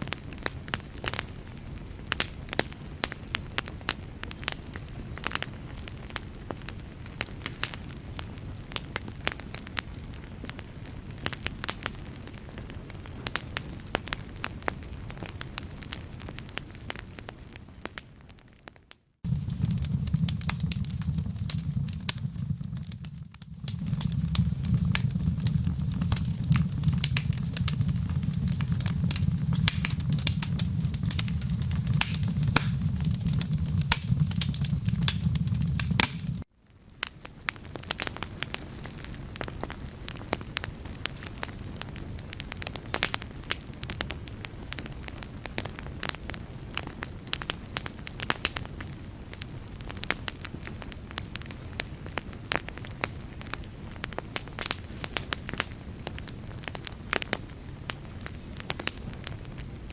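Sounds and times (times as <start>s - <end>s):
wood fire crackling and popping: 0.0s - 59.9s
low steady rumble: 19.3s - 36.4s.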